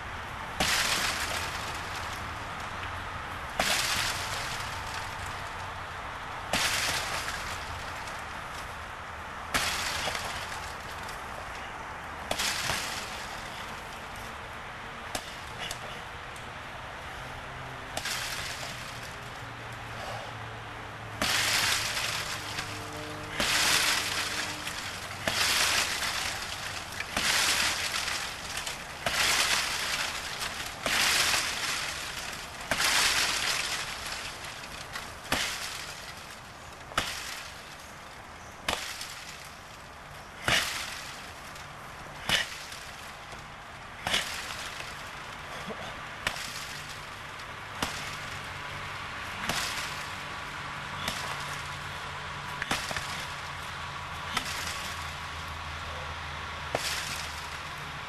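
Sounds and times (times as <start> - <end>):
rustling swishes: 21.2 - 38.1.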